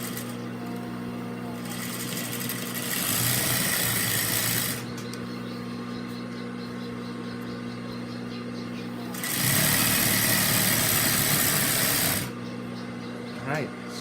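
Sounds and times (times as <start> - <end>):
sewing machine running at high speed: 0.0 - 0.5, 1.4 - 4.9, 9.1 - 12.4
clutch motor humming: 0.0 - 14.0.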